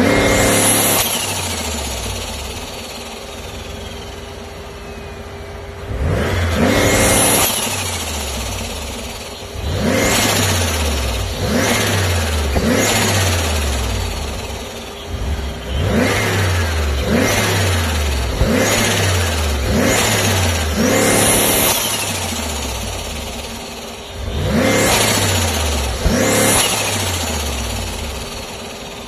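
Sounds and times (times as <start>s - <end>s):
car engine revving: 0.0s - 29.0s
turbo flutter and whistle: 0.8s - 5.3s.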